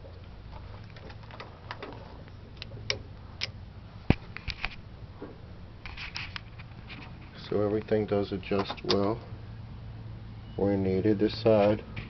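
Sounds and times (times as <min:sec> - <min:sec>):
metal clicks and knocks: 0:00.6 - 0:04.8.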